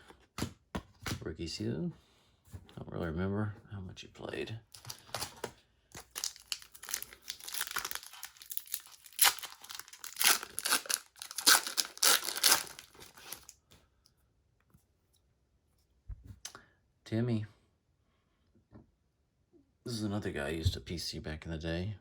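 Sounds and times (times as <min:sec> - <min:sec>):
wrapper tearing and crinkling: 0:06.0 - 0:13.5.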